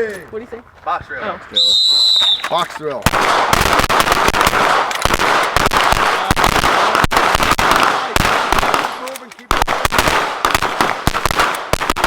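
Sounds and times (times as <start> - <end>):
rapid pistol fire: 3.1 - 12.0.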